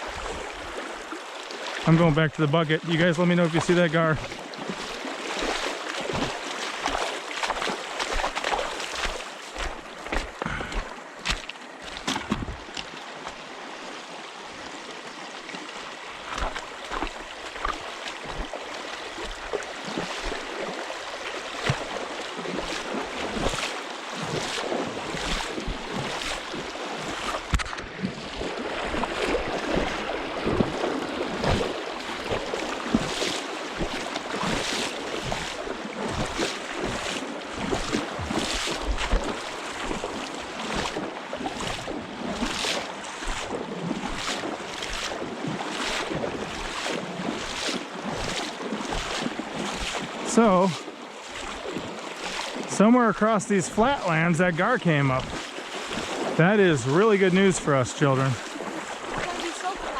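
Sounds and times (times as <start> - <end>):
water washing around boat: 0.0 - 59.9
knocks and clatter on boat: 12.0 - 12.9.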